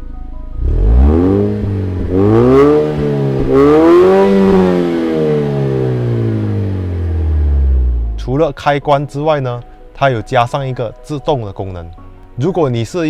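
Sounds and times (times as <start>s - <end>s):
car engine revving: 0.6s - 8.2s.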